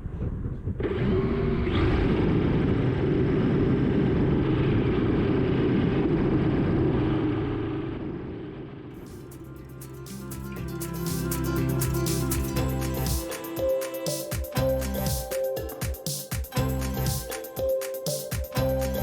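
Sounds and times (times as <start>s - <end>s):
wind rumbling on microphone: 0.0s - 8.9s.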